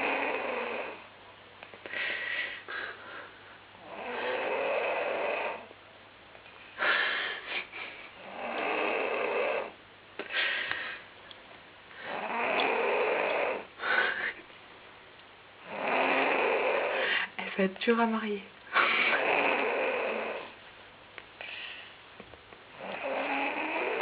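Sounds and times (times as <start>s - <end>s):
loud rasping snoring: 0.0s - 1.1s, 3.8s - 5.7s, 8.2s - 9.8s, 12.0s - 13.7s, 15.6s - 17.1s, 18.8s - 20.6s, 22.8s - 24.0s.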